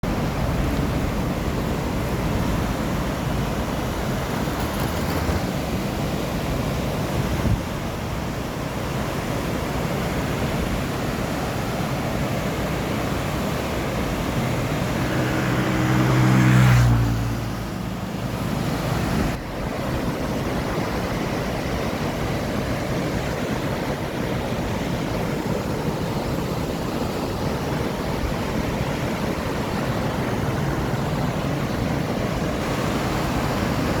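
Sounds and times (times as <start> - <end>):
wind buffeting microphone: 0.0 - 8.8
river water rushing: 0.1 - 34.0.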